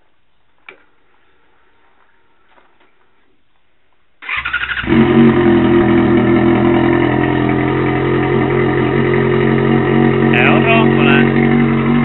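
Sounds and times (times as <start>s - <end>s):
electric starter cranking: 4.2s - 12.0s
motorcycle engine idling loudly: 4.8s - 12.0s.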